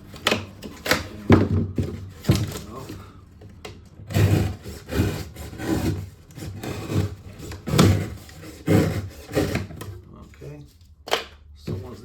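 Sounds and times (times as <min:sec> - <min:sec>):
cardboard being cut and torn: 0:04.1 - 0:09.8.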